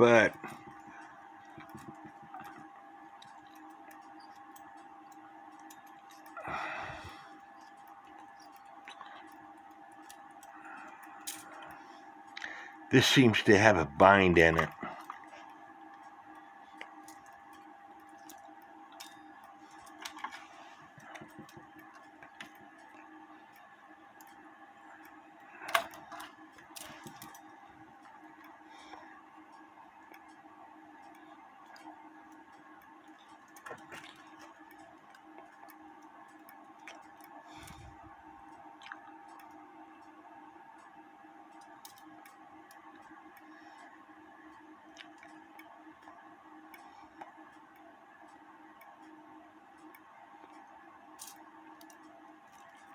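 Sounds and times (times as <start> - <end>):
faint steady hum: 0.0 - 52.9
small metallic clicks: 41.5 - 43.9, 44.5 - 52.9.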